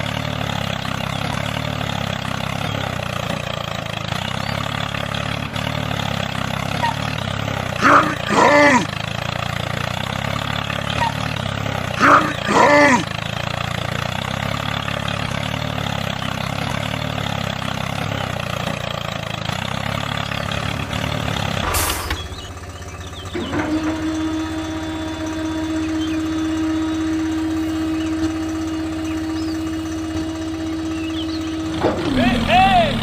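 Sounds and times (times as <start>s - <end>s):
toy tractor motor running: 0.0s - 22.4s, 23.1s - 32.9s.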